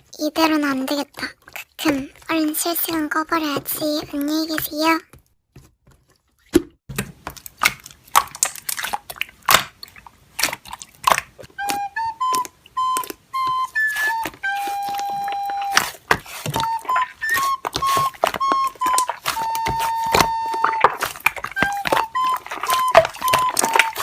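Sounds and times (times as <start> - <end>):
slime squishing with crackling clicks: 6.9 - 24.0
tune of short beeps: 11.7 - 15.8.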